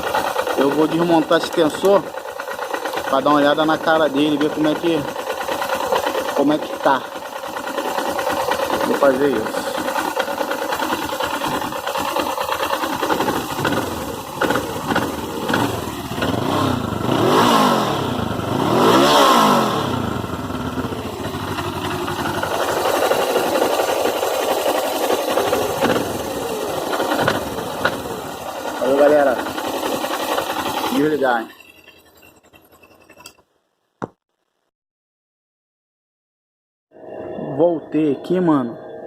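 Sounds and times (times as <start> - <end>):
rapid knocking rattle: 0.0 - 16.7, 20.6 - 33.4
motorcycle engine idling: 0.0 - 33.1.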